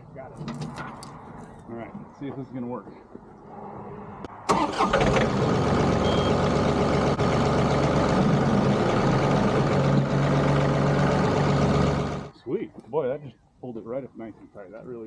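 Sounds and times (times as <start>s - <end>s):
tractor diesel engine revving: 4.5s - 12.3s.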